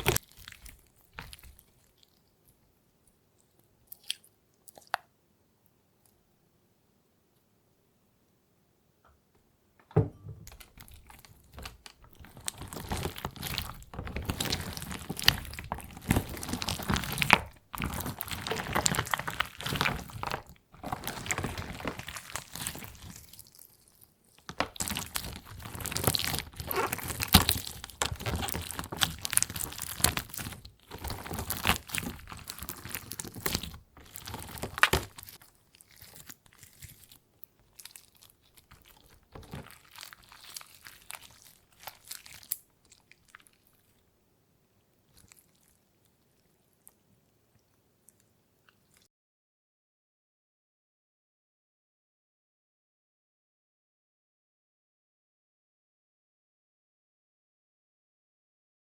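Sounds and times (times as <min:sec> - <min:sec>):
hardened wax crackling and crunching: 0:00.0 - 0:02.3, 0:10.4 - 0:44.1.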